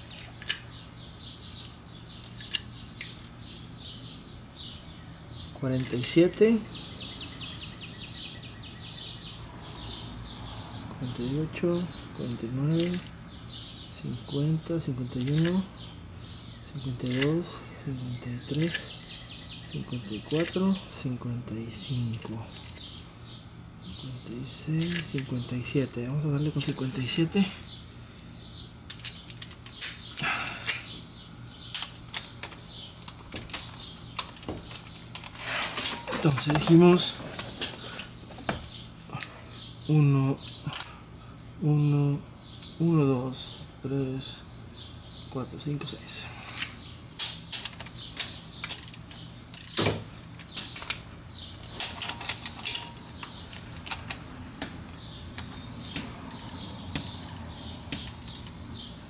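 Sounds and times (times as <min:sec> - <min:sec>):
torque wrench and sockets rattling: 0:46.5 - 0:58.6
ratchet wrench clicking: 0:48.6 - 0:49.8, 0:55.8 - 0:58.6.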